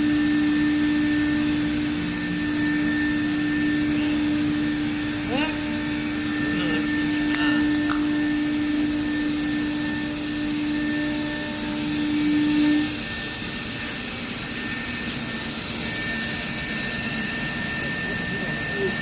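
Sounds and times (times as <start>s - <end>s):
machine hum and hiss: 0.0s - 19.0s
router spindle whine: 0.0s - 19.0s.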